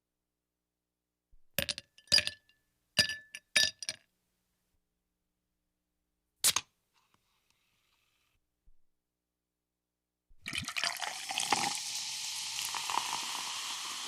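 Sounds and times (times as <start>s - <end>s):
faint fizz: 10.4s - 14.0s
ice cubes clinking in glass: 10.5s - 14.0s.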